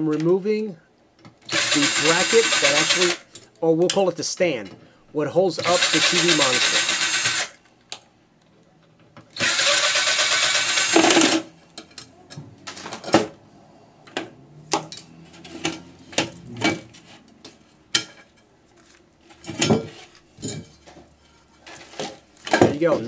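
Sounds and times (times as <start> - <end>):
metal clanks and knocks: 14.1 - 18.5, 19.3 - 23.0.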